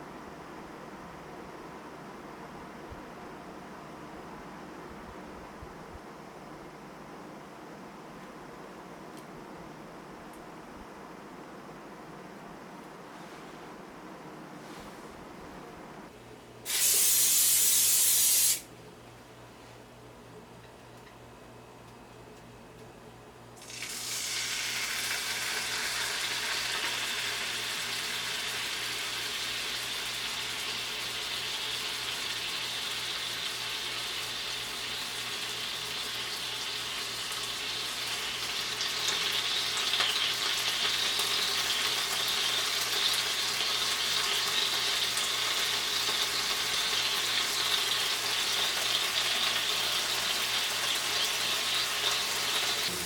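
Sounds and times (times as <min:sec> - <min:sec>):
meat sizzling in a frying pan: 0:16.7 - 0:18.6, 0:23.6 - 0:53.0.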